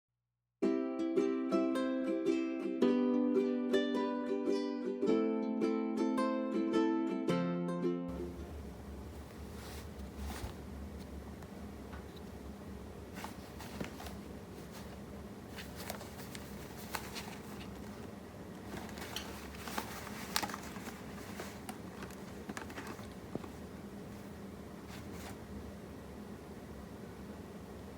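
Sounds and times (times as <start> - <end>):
low room hum: 0.6 - 27.9
fur rustling: 8.1 - 11.2, 13.0 - 25.5.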